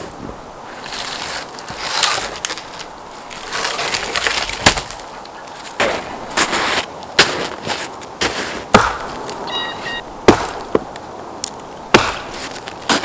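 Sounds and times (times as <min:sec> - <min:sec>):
dry wood cracking and splintering: 0:00.8 - 0:08.1, 0:10.3 - 0:13.0.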